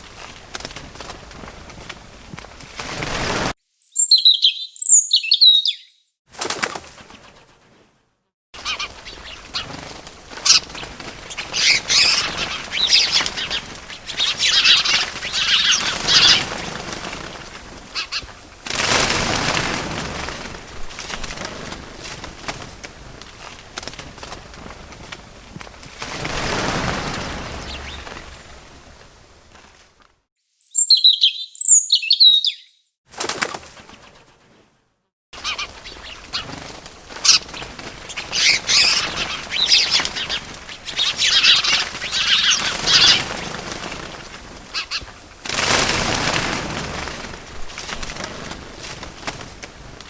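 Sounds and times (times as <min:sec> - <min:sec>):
bird wings flapping: 0:00.0 - 0:03.6, 0:06.3 - 0:08.0, 0:08.6 - 0:30.2, 0:33.1 - 0:34.8, 0:35.4 - 0:50.0
high bird chirps: 0:03.7 - 0:06.1, 0:30.4 - 0:32.9.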